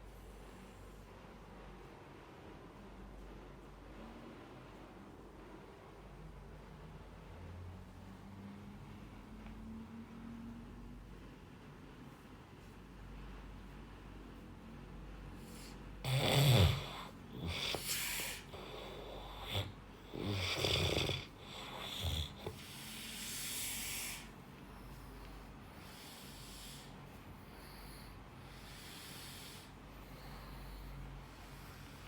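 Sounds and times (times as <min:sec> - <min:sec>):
soft breathing: 0:15.0 - 0:32.0
person snoring: 0:15.5 - 0:24.3.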